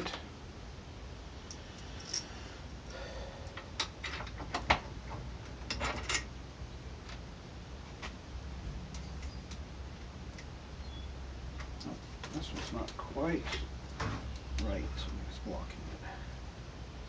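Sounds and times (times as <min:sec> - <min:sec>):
small metal parts clinking: 0:02.0 - 0:02.3.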